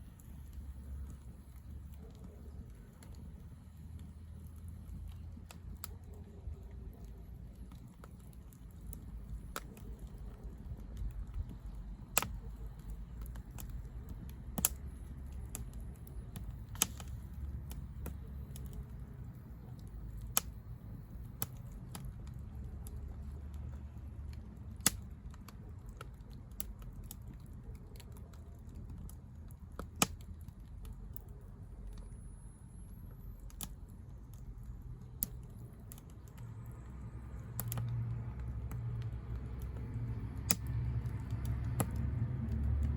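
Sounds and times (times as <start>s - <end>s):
firewood crackling and popping: 0.0s - 42.9s
low steady rumble: 0.0s - 42.9s.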